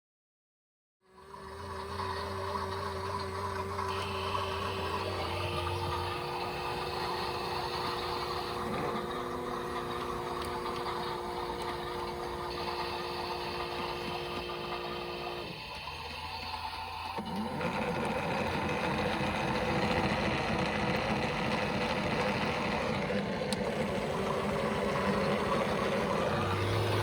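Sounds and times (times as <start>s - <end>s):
toy washing machines whirring: 1.0s - 27.0s.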